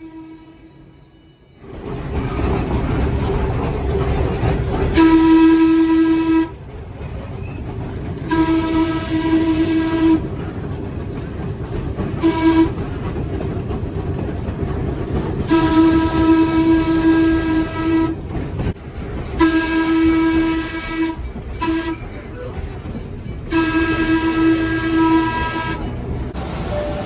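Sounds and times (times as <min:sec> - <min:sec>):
train horn blasts: 0:00.0 - 0:01.0, 0:04.9 - 0:06.6, 0:08.3 - 0:10.3, 0:12.2 - 0:12.8, 0:15.5 - 0:18.3, 0:19.4 - 0:22.2, 0:23.5 - 0:26.0
train running rumble: 0:01.6 - 0:27.0.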